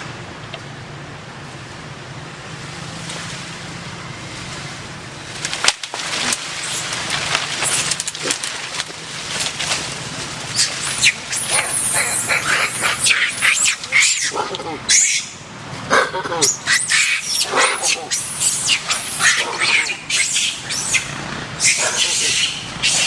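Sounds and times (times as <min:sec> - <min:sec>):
wind: 0:00.0 - 0:23.0
monkeys squealing: 0:07.6 - 0:08.0, 0:10.5 - 0:23.0.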